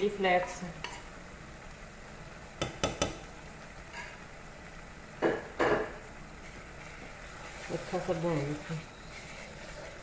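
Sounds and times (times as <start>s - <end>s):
faint sizzle: 0.0s - 10.0s
spoon scraping a pan: 0.8s - 1.2s, 6.4s - 10.0s.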